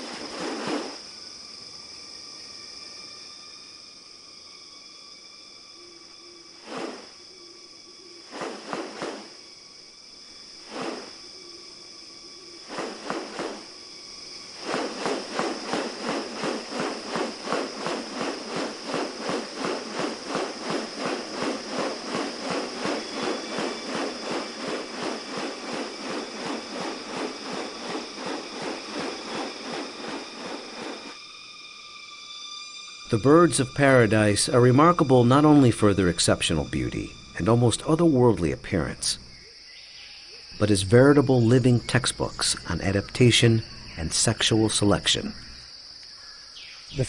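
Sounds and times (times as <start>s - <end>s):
insects buzzing: 0.0s - 47.0s
rapid pulses: 12.6s - 13.8s, 14.4s - 31.2s.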